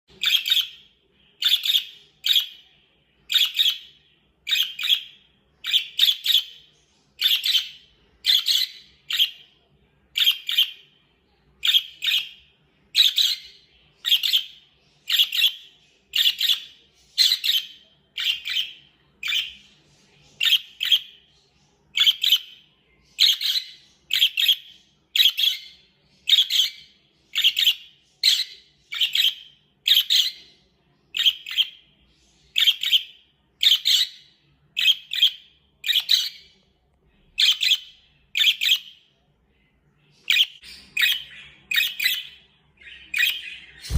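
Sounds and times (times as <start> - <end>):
budgerigar chirping: 0.2 - 2.6, 3.3 - 9.5, 10.2 - 10.8, 11.6 - 19.6, 22.0 - 30.4, 32.6 - 36.5, 37.4 - 39.0.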